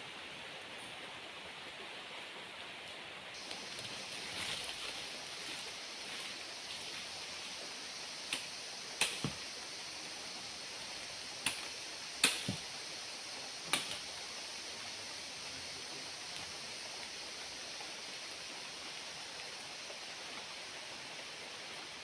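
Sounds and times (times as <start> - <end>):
steady hiss: 0.0 - 22.0
sharp snaps or knocks: 8.3 - 9.4, 11.4 - 12.6, 13.7 - 14.0.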